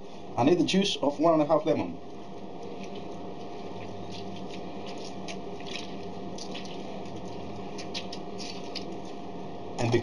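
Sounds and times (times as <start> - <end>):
steady low hum: 0.0 - 10.0
wet squishing of lemon: 2.6 - 9.0.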